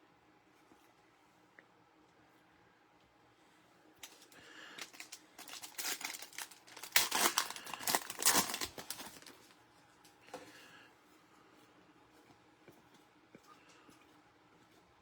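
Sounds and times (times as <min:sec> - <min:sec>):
card pack wrapper crinkling and tearing: 0:04.0 - 0:09.5.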